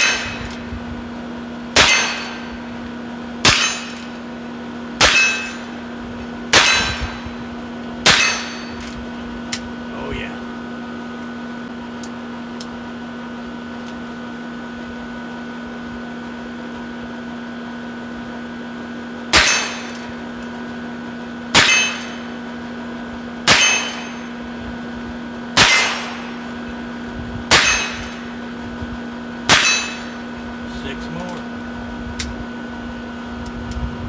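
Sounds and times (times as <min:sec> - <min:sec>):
revolver shots with metallic ring: 0:00.0 - 0:00.7, 0:01.7 - 0:02.7, 0:03.4 - 0:04.3, 0:05.0 - 0:05.9, 0:06.5 - 0:08.9, 0:19.3 - 0:20.3, 0:21.5 - 0:22.8, 0:23.4 - 0:24.6, 0:25.5 - 0:26.8, 0:27.5 - 0:28.5, 0:29.4 - 0:30.4
steady hum: 0:00.0 - 0:34.0.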